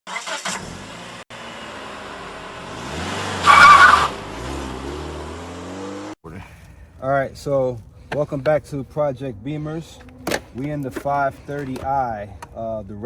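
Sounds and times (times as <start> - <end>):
car engine revving: 0.1 - 6.2
tyre squeal: 3.4 - 4.2.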